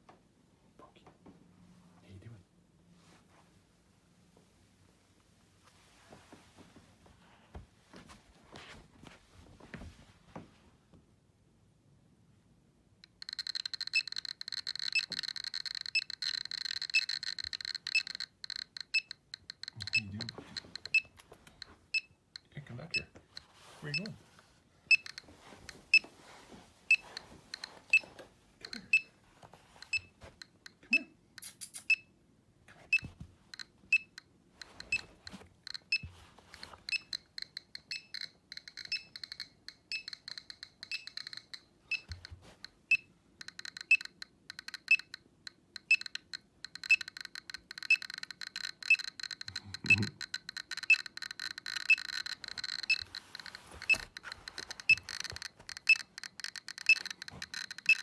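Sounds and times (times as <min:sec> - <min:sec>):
geiger counter clicking: 0:13.0 - 0:24.2, 0:24.9 - 0:26.1, 0:32.9 - 0:58.0
short beeps: 0:40.8 - 0:42.1, 0:49.8 - 0:50.2.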